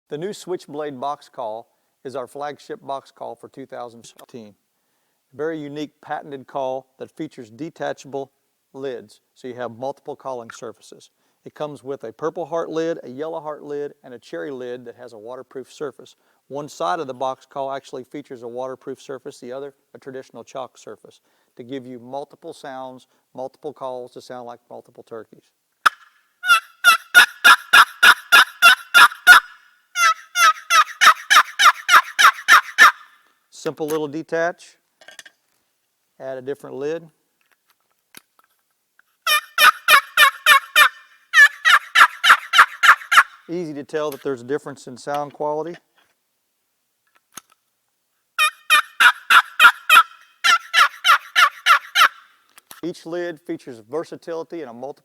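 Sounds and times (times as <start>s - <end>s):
turkey box call yelps: 25.8s - 33.3s, 39.2s - 43.5s, 48.4s - 52.4s.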